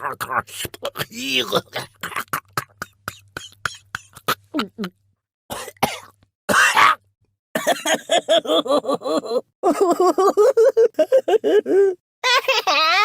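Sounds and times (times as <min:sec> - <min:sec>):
cartoon voice rapid chattering: 0:00.0 - 0:01.8.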